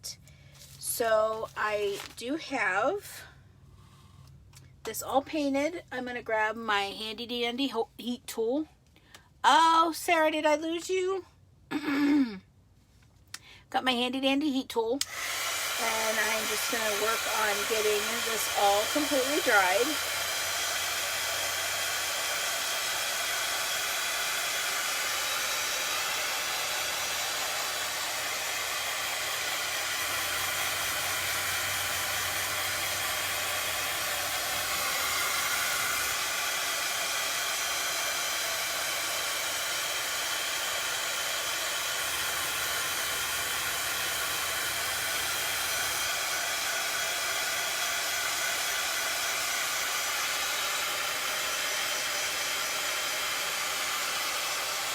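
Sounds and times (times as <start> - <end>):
heat gun blowing: 15.0 - 54.9.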